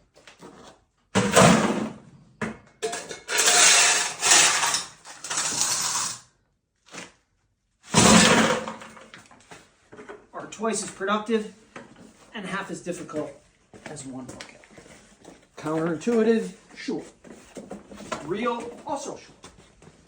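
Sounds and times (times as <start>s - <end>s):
concrete rubble clattering: 2.8s - 6.2s.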